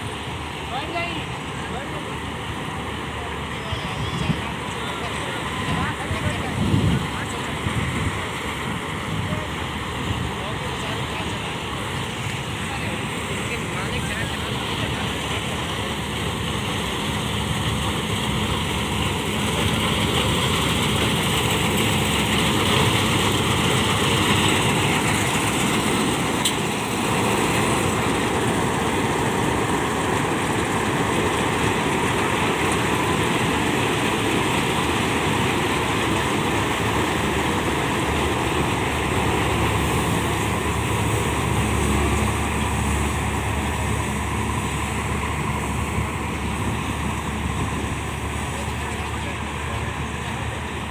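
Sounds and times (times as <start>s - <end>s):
combine harvester drone: 0.0s - 50.9s.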